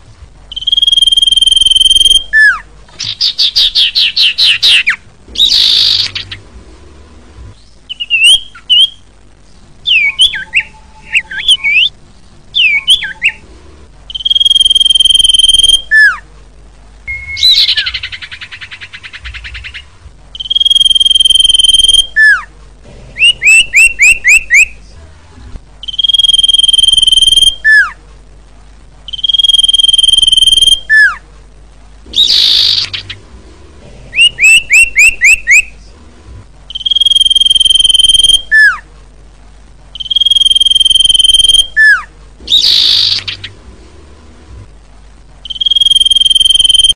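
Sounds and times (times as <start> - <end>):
bird chirps falling: 0.5 - 6.4, 14.1 - 16.2, 17.1 - 22.4, 29.1 - 31.2, 36.7 - 38.8, 40.0 - 43.5, 45.4 - 46.9
bird whistling calls: 0.5 - 6.4, 7.9 - 9.0, 9.9 - 11.9, 12.6 - 13.4, 14.1 - 16.2, 17.1 - 22.5, 23.2 - 24.7, 25.8 - 28.0, 29.1 - 31.2, 32.1 - 33.2, 34.2 - 35.7, 36.7 - 38.8, 40.0 - 43.5, 45.4 - 46.9
harsh rasping bird calls: 0.5 - 6.5, 17.1 - 22.5, 32.1 - 33.3, 34.1 - 35.7, 40.0 - 43.6.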